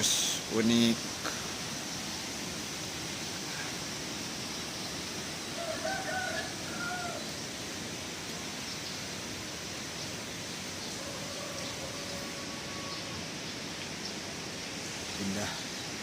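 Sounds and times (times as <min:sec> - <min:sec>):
steady background hiss: 0:00.0 - 0:16.0
rooster crowing: 0:05.5 - 0:07.4, 0:10.9 - 0:13.4.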